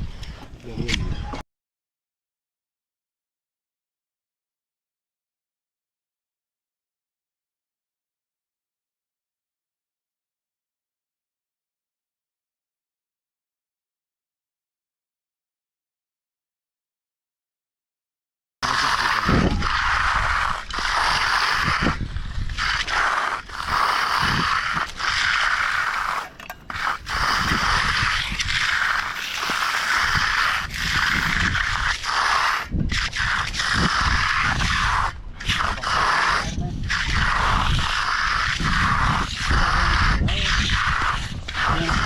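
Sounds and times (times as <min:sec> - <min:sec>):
hand tool scraping wet concrete: 0:18.6 - 0:42.0.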